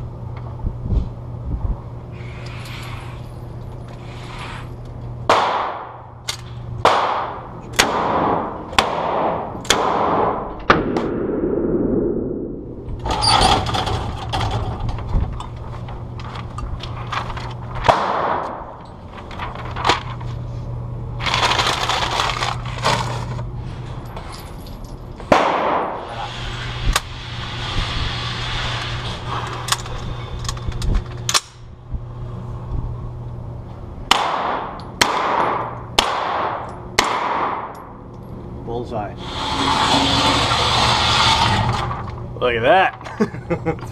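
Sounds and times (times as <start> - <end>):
steady low hum: 0.0 - 43.9
gunshots with ringing tail: 5.3 - 6.0, 6.8 - 13.0, 25.3 - 26.0.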